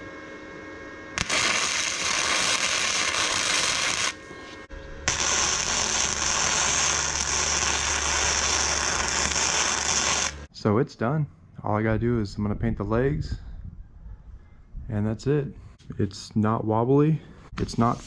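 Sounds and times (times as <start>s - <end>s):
low hum: 0.0s - 16.0s
welding arc crackling: 1.2s - 10.5s.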